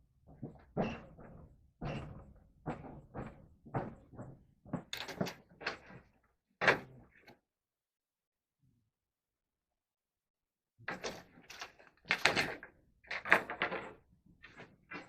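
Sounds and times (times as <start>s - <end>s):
irregular knocks and clunks: 0.2s - 7.4s.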